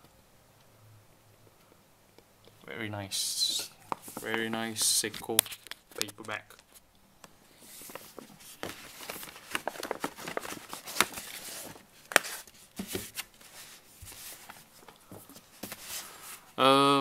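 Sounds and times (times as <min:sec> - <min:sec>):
paper bag rustling: 0:07.8 - 0:14.6.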